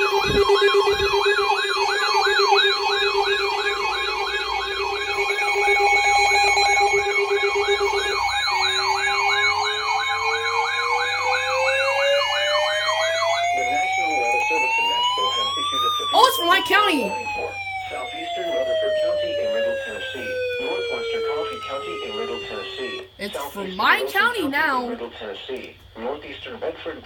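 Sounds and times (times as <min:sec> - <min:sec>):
rising siren wail: 0:00.0 - 0:24.4
electronic siren yelp: 0:00.0 - 0:24.9
steady siren tones: 0:00.0 - 0:25.3.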